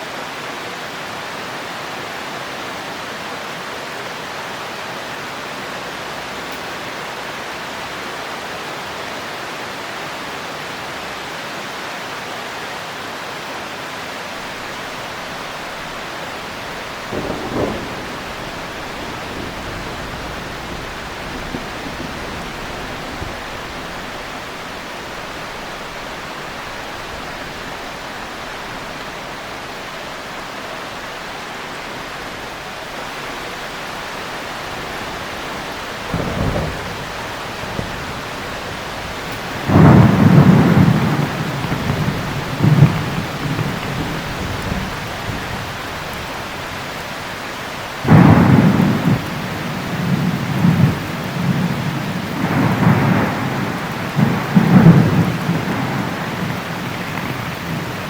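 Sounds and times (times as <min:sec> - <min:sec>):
heavy rain: 0:00.0 - 0:58.0
thunder rumbling: 0:14.3 - 0:58.0.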